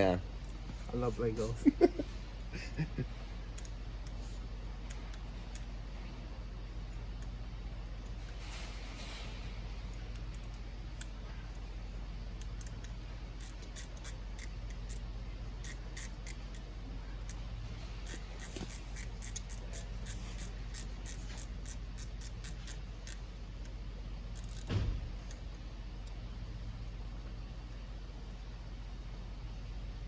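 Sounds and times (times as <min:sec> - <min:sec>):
low steady hum: 0:00.0 - 0:30.0
hand ratchet clicking: 0:12.4 - 0:23.8, 0:24.4 - 0:25.4
loud thump: 0:24.7 - 0:25.1.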